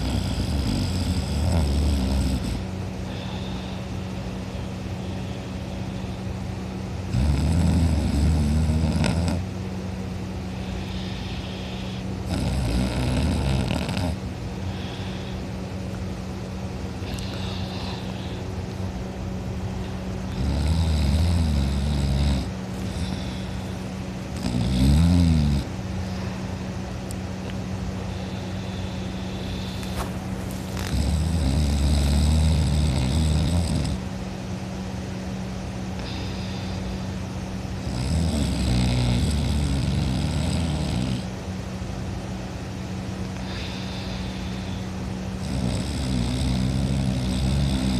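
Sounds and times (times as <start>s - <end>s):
person snoring: 0.0s - 3.8s, 7.1s - 9.4s, 10.6s - 15.4s, 17.0s - 18.4s, 20.3s - 25.7s, 28.1s - 34.0s, 37.8s - 41.3s, 45.4s - 47.9s
steady low hum: 0.0s - 47.9s.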